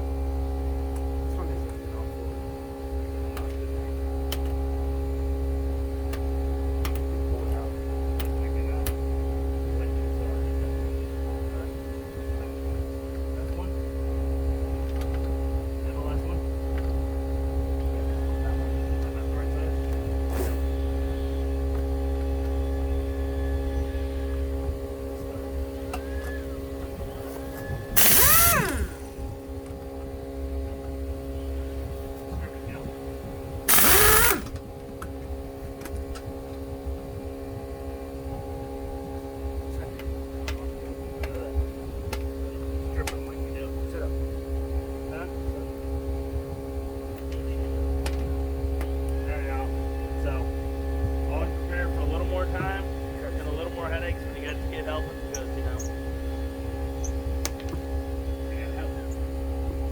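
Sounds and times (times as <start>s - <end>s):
mechanical hum: 0.0s - 59.9s
electrical hum: 16.4s - 29.7s, 33.4s - 34.6s
sharp clicks: 28.0s - 29.1s, 33.7s - 34.6s
pneumatic tool air rush: 28.0s - 29.2s, 33.7s - 34.6s.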